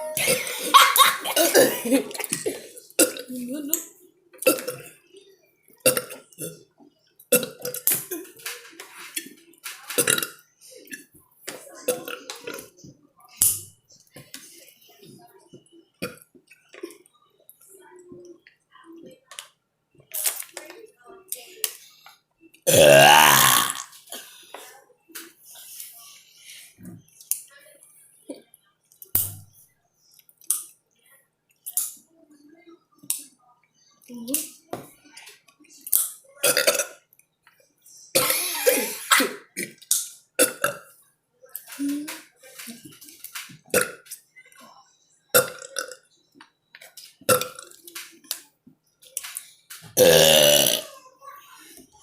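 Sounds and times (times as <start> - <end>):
loud burps: 1.3 - 3.3, 4.4 - 5.0, 5.8 - 6.6, 7.3 - 8.1, 10.0 - 10.4, 22.7 - 24.0, 36.4 - 37.0, 40.4 - 40.9, 43.7 - 44.0, 45.4 - 46.1, 47.3 - 47.6, 50.0 - 50.9.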